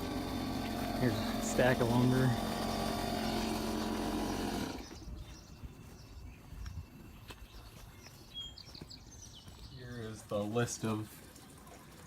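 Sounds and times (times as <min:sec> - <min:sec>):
motor humming: 0:00.0 - 0:05.0.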